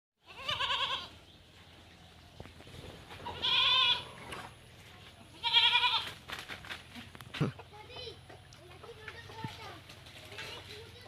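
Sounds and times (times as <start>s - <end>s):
farm animal bleating: 0.2s - 1.3s, 3.1s - 4.4s, 5.2s - 6.2s.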